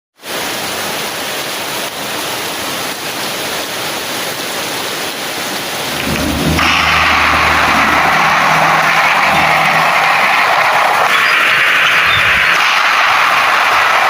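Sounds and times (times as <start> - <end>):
rain on a tin umbrella: 0.2 - 14.0
low rumble: 5.8 - 14.0.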